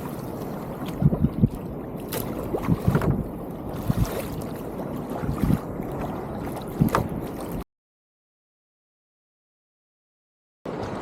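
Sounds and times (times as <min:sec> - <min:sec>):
water splashing around kayak: 0:00.0 - 0:07.6
wind buffeting microphone: 0:00.0 - 0:07.6.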